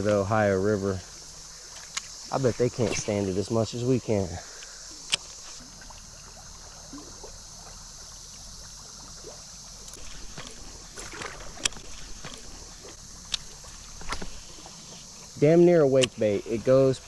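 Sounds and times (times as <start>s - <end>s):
faint splashes: 0.0s - 17.0s
insects chirring: 0.0s - 17.0s
water moving: 0.0s - 17.0s
clicks: 4.6s - 5.6s.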